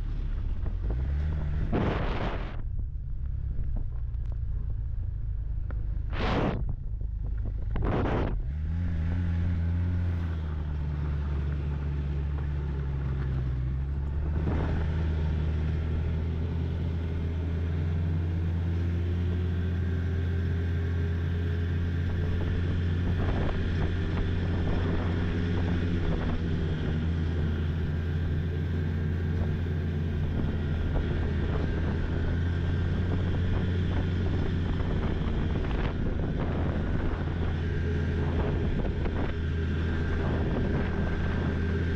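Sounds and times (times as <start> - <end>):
snowmobile engine running: 0.0 - 41.9
brief whoosh: 1.5 - 2.8, 6.0 - 6.7.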